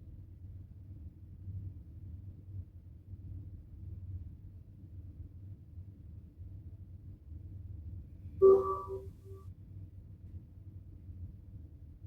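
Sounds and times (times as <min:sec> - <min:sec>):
chime ringing: 0:08.4 - 0:09.1
faint low hum: 0:08.4 - 0:09.1.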